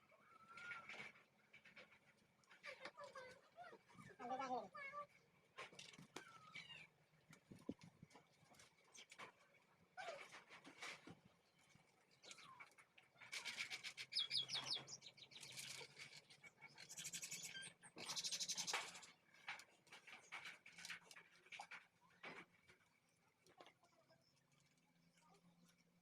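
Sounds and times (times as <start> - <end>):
high bird chirps: 14.1 - 15.6.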